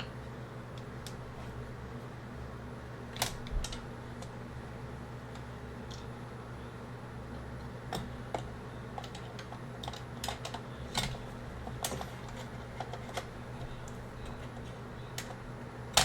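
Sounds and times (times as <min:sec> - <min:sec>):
steady low hum: 0:00.0 - 0:16.0
clicks and taps of computer parts: 0:07.9 - 0:15.4.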